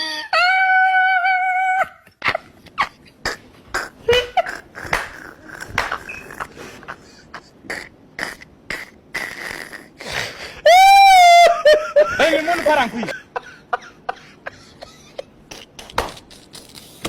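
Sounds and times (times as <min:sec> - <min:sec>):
loud high cry: 0:00.0 - 0:02.0, 0:10.6 - 0:11.8.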